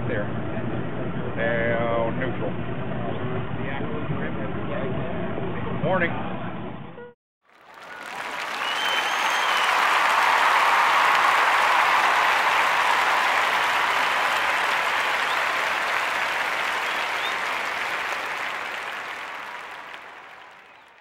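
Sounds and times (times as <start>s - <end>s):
people applauding: 7.5s - 21.0s.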